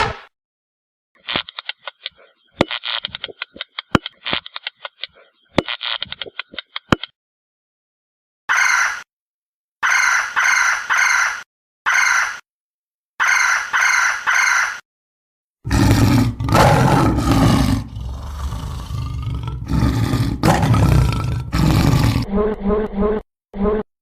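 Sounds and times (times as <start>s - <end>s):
deep loud roaring call: 15.7s - 22.3s.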